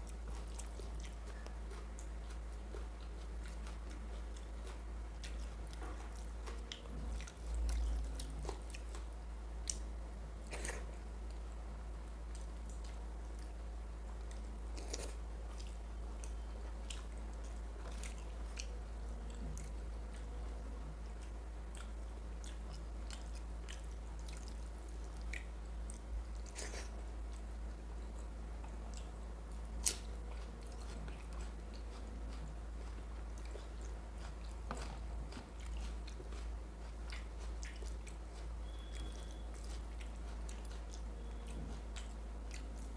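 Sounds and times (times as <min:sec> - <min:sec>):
wet chewing: 0:00.0 - 0:11.4, 0:14.2 - 0:20.4, 0:21.1 - 0:42.9
small mouth clicks and smacks: 0:21.8 - 0:26.9.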